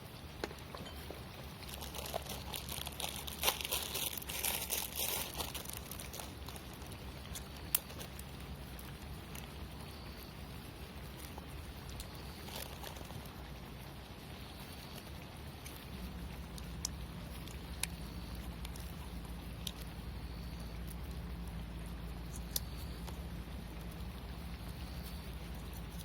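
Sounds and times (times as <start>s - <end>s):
campfire popping: 0.0s - 26.0s
low fire rumble: 0.0s - 26.0s.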